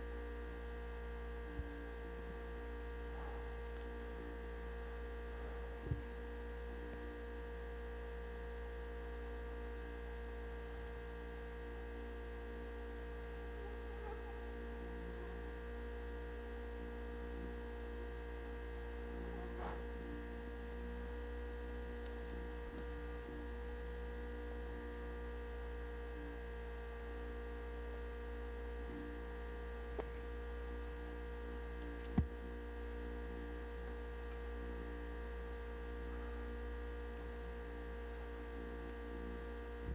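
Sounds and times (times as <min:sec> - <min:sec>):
electrical hum: 0:00.0 - 0:39.9.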